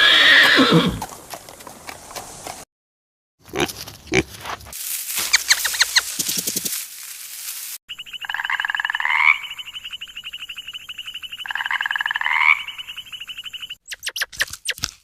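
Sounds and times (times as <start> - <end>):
frogs trilling: 7.9 - 13.8.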